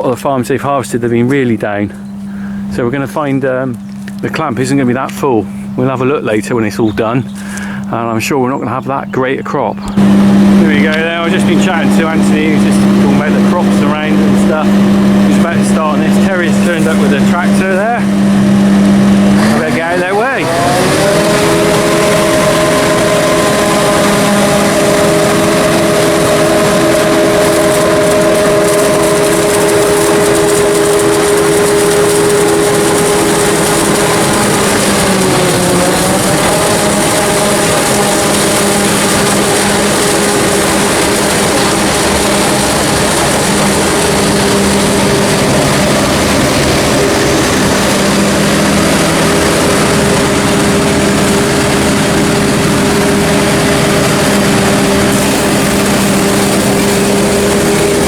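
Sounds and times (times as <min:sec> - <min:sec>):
harvester and tractor engines running: 0:00.0 - 0:58.0.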